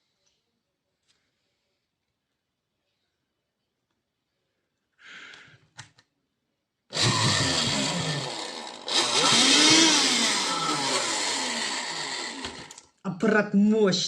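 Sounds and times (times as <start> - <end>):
vacuum cleaner running loudly: 6.9 - 12.8.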